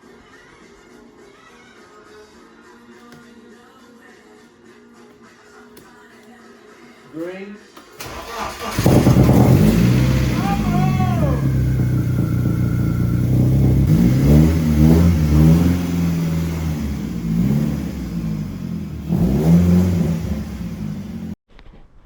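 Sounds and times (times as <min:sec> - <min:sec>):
car engine idling and revving: 0:08.0 - 0:21.4.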